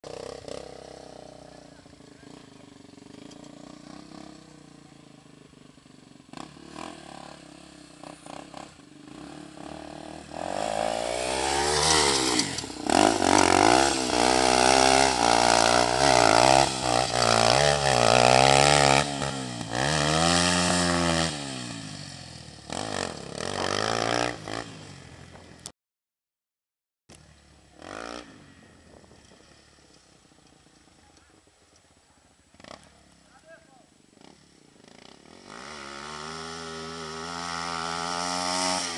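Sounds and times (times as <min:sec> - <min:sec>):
motorcycle engine revving hard: 0:00.0 - 0:25.4, 0:27.7 - 0:28.7, 0:34.2 - 0:38.9
clatter: 0:02.0 - 0:04.4.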